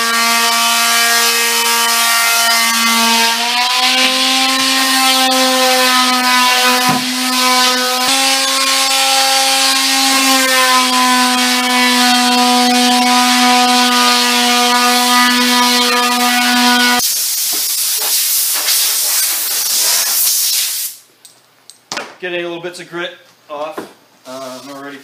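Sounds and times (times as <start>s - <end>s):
orbital sander whining: 0.0s - 17.0s
air blast hissing: 17.0s - 21.0s.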